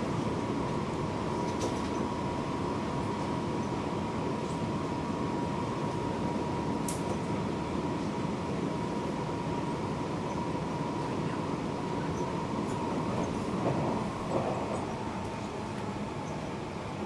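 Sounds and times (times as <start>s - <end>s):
train wheels rumbling: 11.8s - 17.0s.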